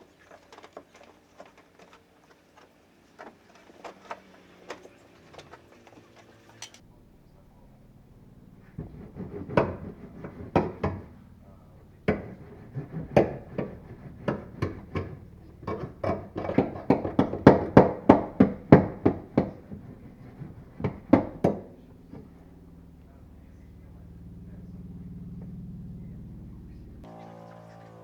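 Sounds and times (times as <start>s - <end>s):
sharp knocks: 8.6s - 22.6s.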